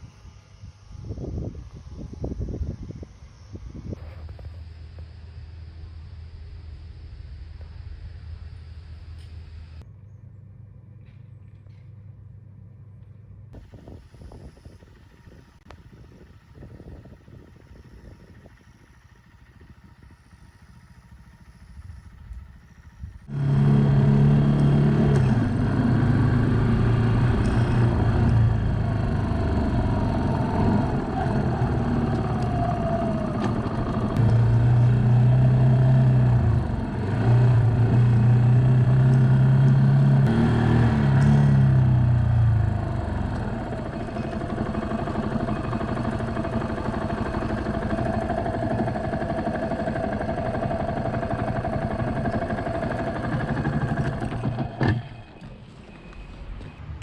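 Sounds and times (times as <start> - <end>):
motorcycle engine running: 13.6 - 56.7.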